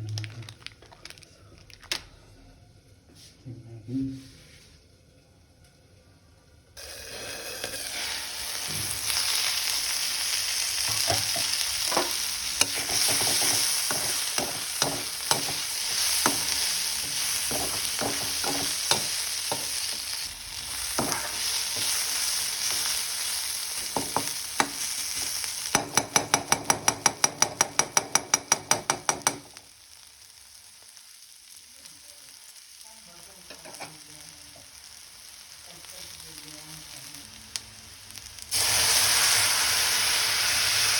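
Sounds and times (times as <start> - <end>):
vegetables sizzling in oil: 6.8 - 40.9
spatula knocking against pan: 13.0 - 15.6, 25.7 - 29.5.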